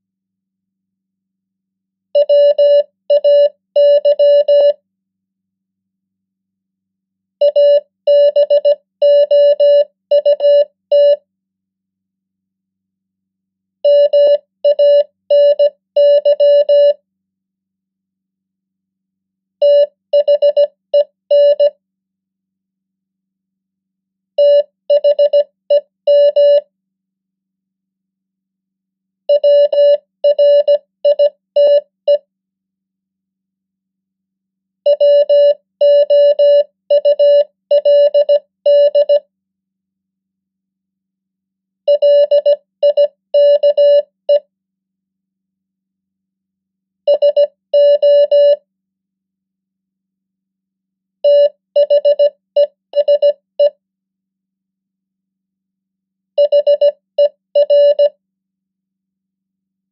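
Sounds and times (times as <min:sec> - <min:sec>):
morse code beeps: 0:02.2 - 0:04.8, 0:07.5 - 0:11.2, 0:13.9 - 0:17.0, 0:19.6 - 0:21.7, 0:26.1 - 0:26.6, 0:29.3 - 0:32.2, 0:34.9 - 0:39.2, 0:41.9 - 0:44.4, 0:47.1 - 0:48.6, 0:51.3 - 0:53.7, 0:56.4 - 0:58.2.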